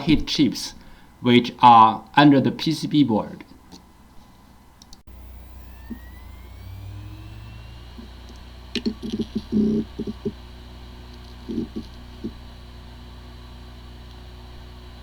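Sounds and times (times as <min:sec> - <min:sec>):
steady hum: 0:03.8 - 0:15.0
hard drive rapid clicks: 0:05.0 - 0:15.0
hard drive spinning up whine: 0:05.1 - 0:15.0.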